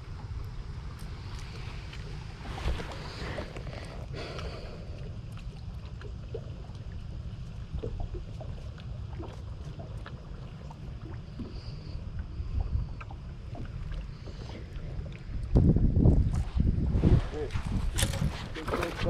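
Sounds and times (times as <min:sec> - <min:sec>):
water lapping: 0:00.0 - 0:16.7
wind buffeting microphone: 0:12.3 - 0:19.0.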